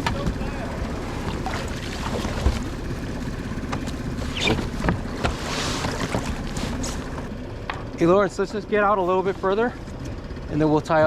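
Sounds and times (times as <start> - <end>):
water noise: 0.0 - 7.4.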